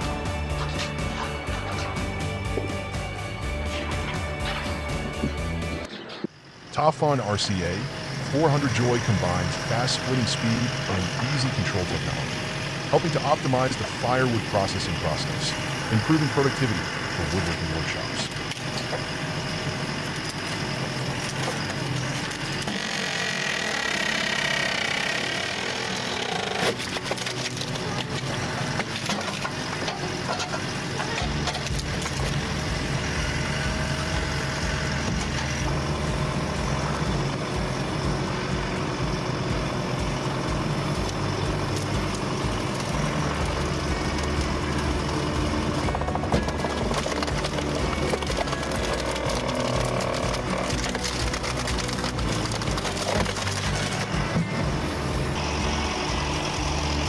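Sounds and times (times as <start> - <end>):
low engine rumble: 0.0 - 5.9, 7.6 - 22.6, 26.8 - 57.0
machinery running: 0.0 - 57.0
wood cracking and splintering: 21.2 - 32.6, 41.0 - 55.3.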